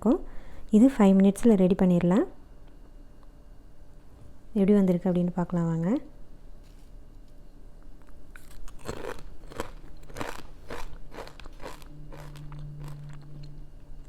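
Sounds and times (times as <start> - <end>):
chewing crunchy snack: 8.3 - 13.6.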